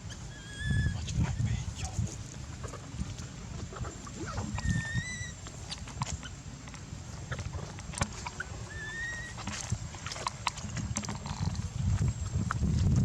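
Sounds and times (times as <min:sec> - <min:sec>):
baby monkey crying: 0:00.1 - 0:01.0, 0:04.3 - 0:05.4, 0:08.7 - 0:09.4.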